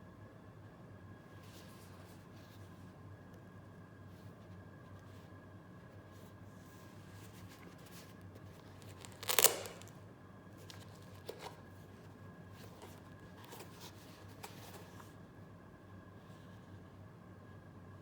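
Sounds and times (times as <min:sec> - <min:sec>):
paper rustling: 0:07.1 - 0:09.9, 0:10.6 - 0:15.2.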